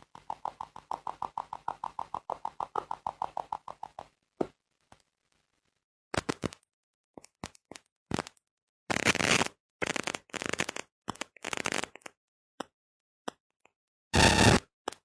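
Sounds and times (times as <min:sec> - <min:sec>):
radio static crackles: 0:14.2 - 0:14.6.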